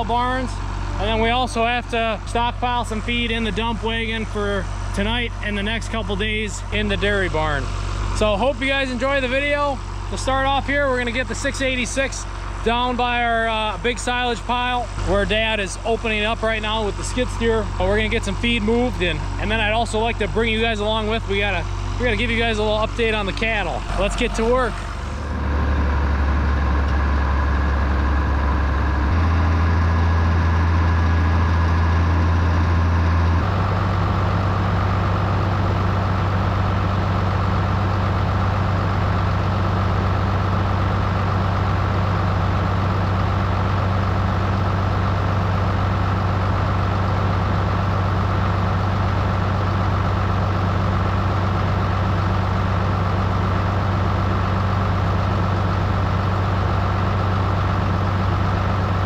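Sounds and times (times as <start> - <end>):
tractor engine running: 0.0 - 59.0.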